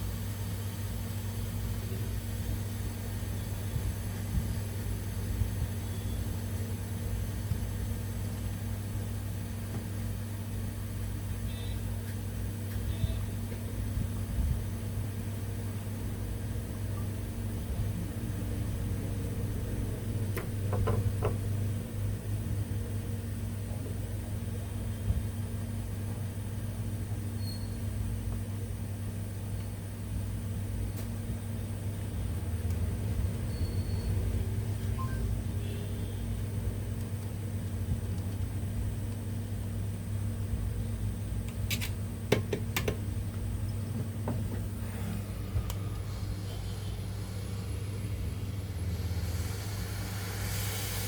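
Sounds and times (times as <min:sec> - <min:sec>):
low hum of bench equipment: 0:00.0 - 0:51.0
tools clicking on circuit board: 0:41.5 - 0:43.0.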